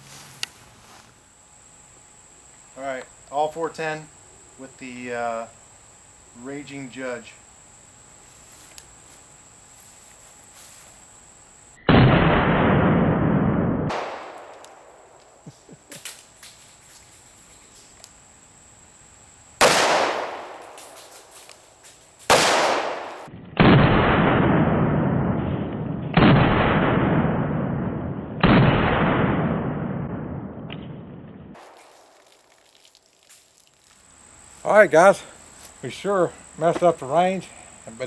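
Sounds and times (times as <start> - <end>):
revolver shots with echo: 19.6 - 21.0, 22.3 - 23.8.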